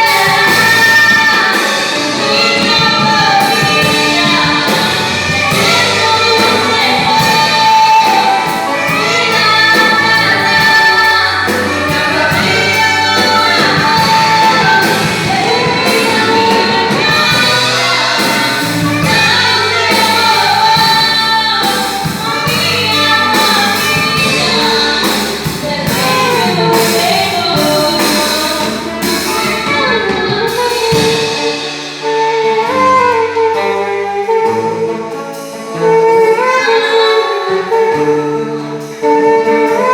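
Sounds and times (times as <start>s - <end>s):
lead vocal singing: 0.0s - 32.0s
band playing a song: 0.0s - 39.9s.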